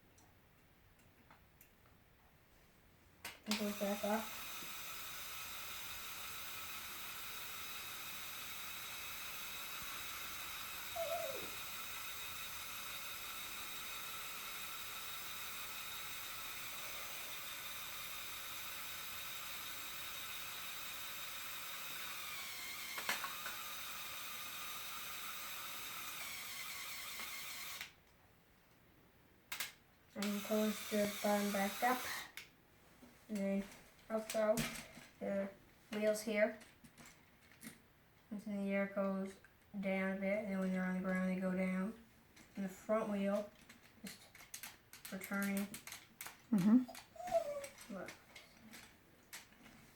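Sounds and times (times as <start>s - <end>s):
small electric motor whining: 3.5s - 28.0s, 30.2s - 32.4s.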